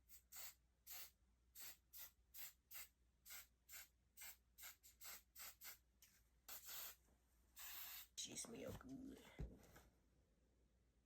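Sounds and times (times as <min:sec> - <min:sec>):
hairspray hissing bursts: 0:06.5 - 0:07.0, 0:07.6 - 0:08.2.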